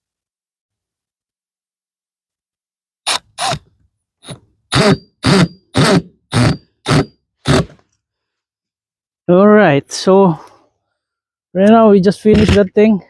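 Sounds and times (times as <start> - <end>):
impact driver driving a screw: 3.1 - 7.8.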